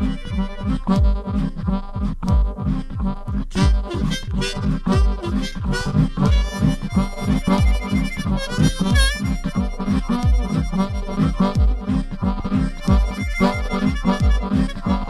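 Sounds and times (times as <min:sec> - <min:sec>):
low thumping beat: 0:00.0 - 0:15.0
reedy melody: 0:03.2 - 0:15.0.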